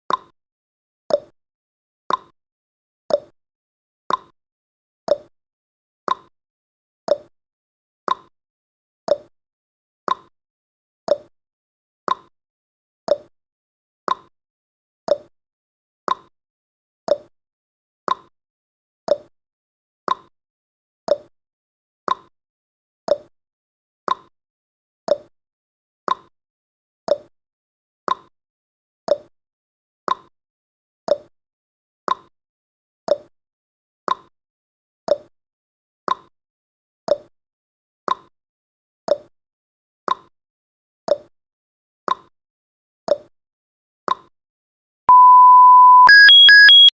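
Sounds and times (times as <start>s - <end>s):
timer ticking clicks: 45.1s - 46.9s.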